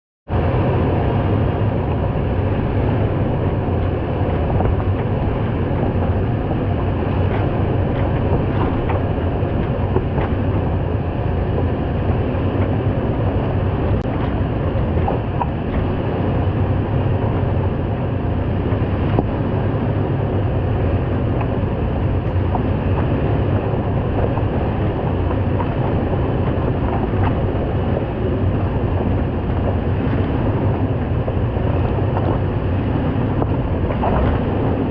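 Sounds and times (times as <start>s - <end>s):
car engine and drivetrain rumble: 0.3s - 34.9s
faint clicks and knocks: 3.8s - 10.7s, 21.3s - 34.9s.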